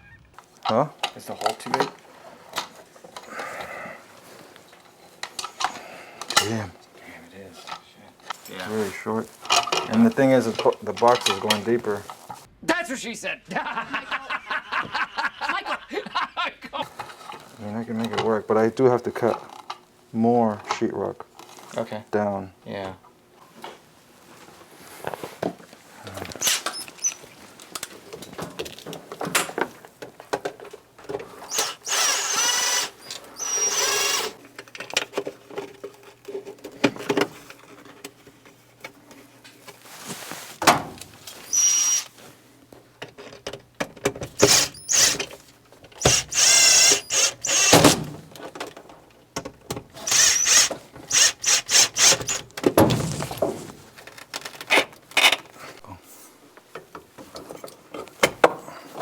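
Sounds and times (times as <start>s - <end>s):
tool handling noises: 0.4s - 12.5s, 16.8s - 19.9s, 23.4s - 59.0s
power tool motor whine: 31.5s - 34.4s, 44.4s - 45.3s, 46.0s - 48.0s, 50.0s - 52.4s.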